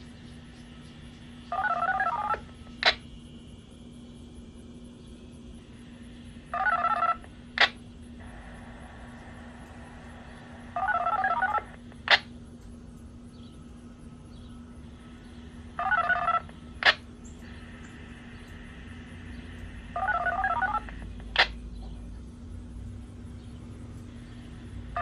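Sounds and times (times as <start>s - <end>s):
faint steady hum: 0.0s - 25.0s
dtmf tone pairs: 5.9s - 25.0s.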